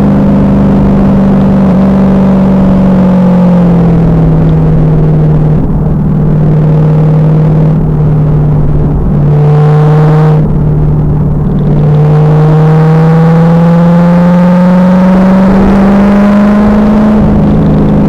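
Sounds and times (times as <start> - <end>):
car engine running hard: 0.0 - 18.0.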